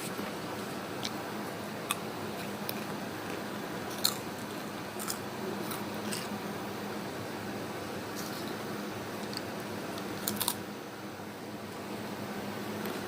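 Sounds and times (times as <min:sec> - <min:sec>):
chips crunching: 0:01.8 - 0:06.4, 0:09.2 - 0:10.6.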